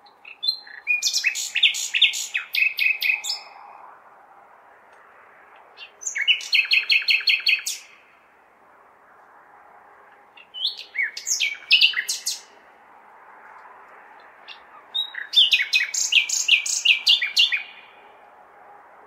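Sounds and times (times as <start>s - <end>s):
nightingale singing: 0.0s - 3.6s, 5.8s - 8.1s, 10.4s - 12.5s, 14.5s - 17.9s
city background hum: 0.0s - 19.0s.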